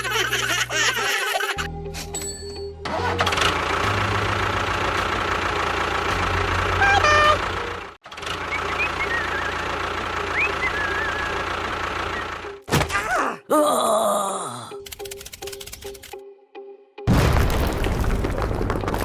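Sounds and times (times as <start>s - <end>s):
engine chugging: 2.9s - 12.6s.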